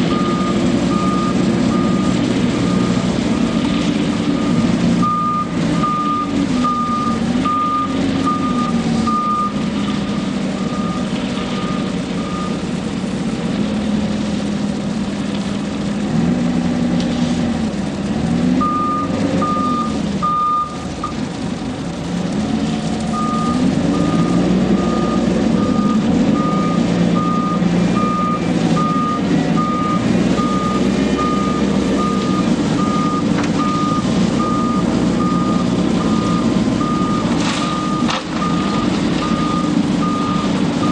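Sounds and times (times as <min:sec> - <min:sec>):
reversing alarm beeping: 0:00.0 - 0:03.1, 0:04.2 - 0:12.7, 0:18.6 - 0:21.2, 0:23.1 - 0:40.9
diesel engine revving: 0:00.0 - 0:40.9.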